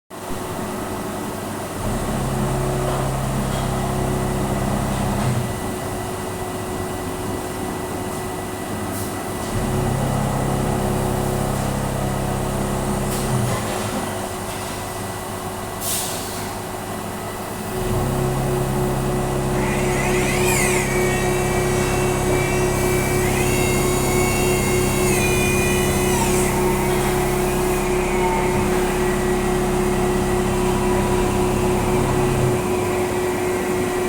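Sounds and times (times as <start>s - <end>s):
machine hum and whine: 0.2s - 15.8s, 16.5s - 34.0s
low machine drone: 17.8s - 34.0s.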